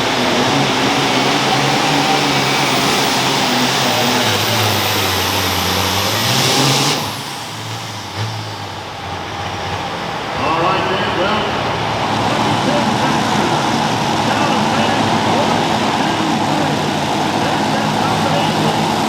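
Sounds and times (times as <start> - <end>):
tractor engine at full throttle: 0.0 - 19.0.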